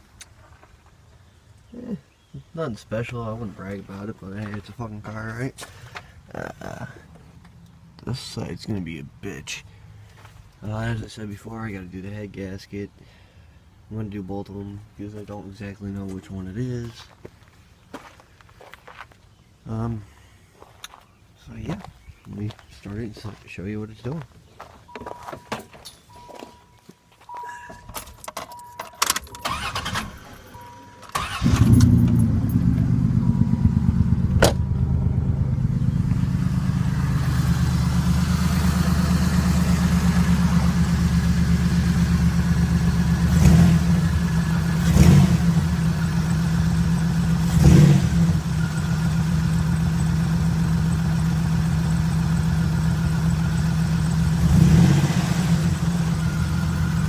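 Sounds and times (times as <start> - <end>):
car chime tone: 24.9 - 29.8, 30.4 - 31.2
car engine starting and idling: 27.2 - 57.0.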